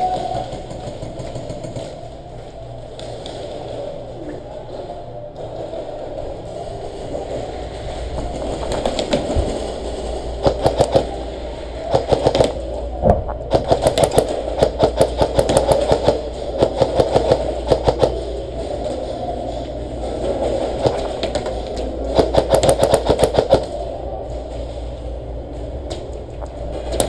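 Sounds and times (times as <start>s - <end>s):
airsoft guns firing: 0.0s - 2.2s, 8.4s - 12.7s, 13.5s - 23.9s
steady rushing noise: 5.1s - 27.0s.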